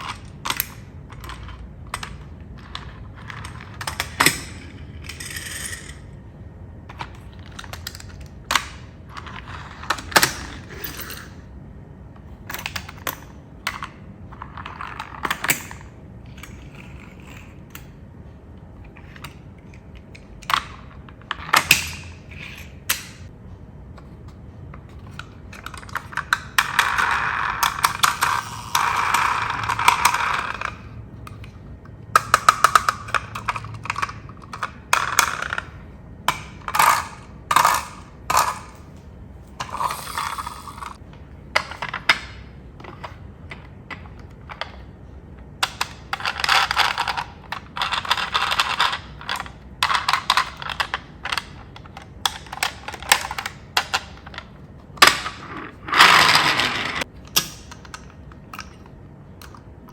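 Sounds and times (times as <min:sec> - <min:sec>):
rattling scrapes: 0:55.2 - 0:57.1.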